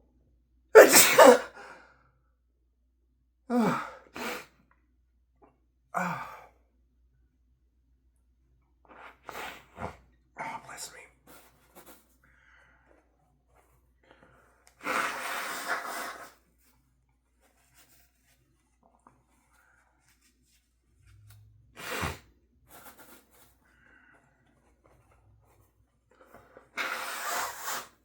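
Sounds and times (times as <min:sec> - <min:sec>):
man sneezing: 0:00.8 - 0:01.6.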